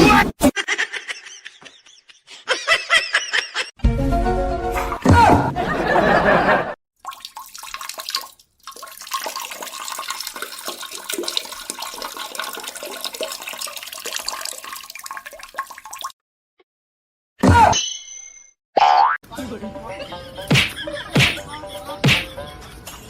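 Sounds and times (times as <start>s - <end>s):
running water splashing: 7.0s - 16.1s.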